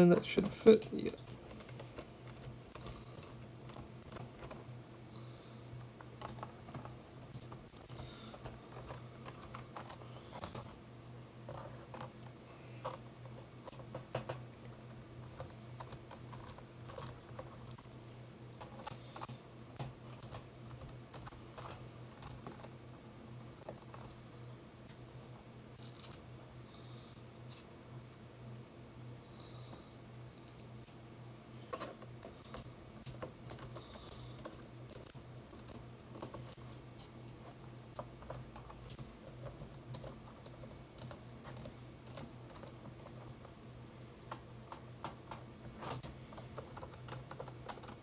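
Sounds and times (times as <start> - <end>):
low steady hum: 0.0 - 48.0
keyboard clicks and plastic taps: 11.4 - 17.9, 44.2 - 48.0.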